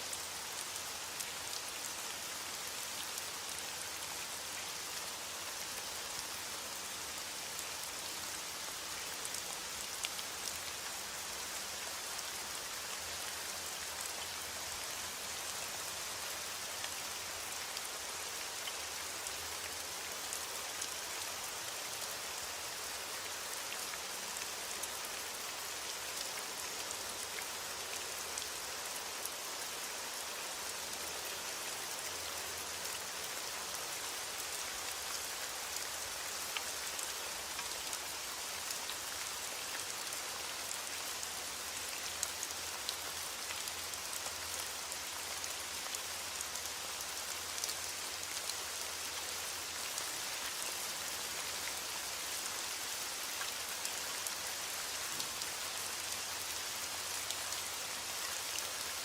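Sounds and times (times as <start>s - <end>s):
steady rain hiss: 0.0s - 59.0s.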